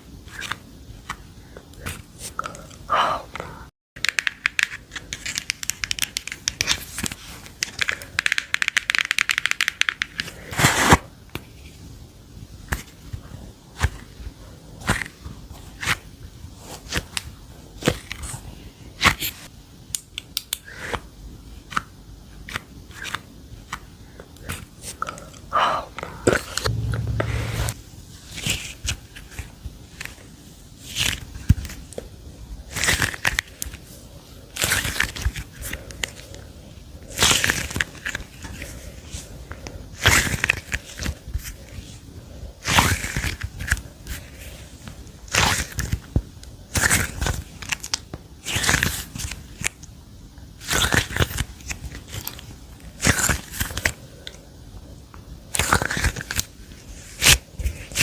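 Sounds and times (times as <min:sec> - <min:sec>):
sharp knock: 0:26.7 - 0:27.8.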